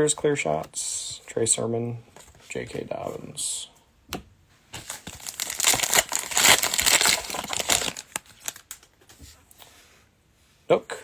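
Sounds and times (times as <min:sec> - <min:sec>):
plastic wrapper crinkling: 0:04.8 - 0:08.9.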